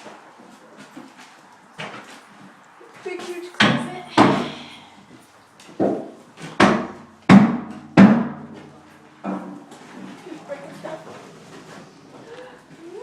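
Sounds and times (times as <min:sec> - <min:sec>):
hollow knocks ringing: 0:05.8 - 0:08.6.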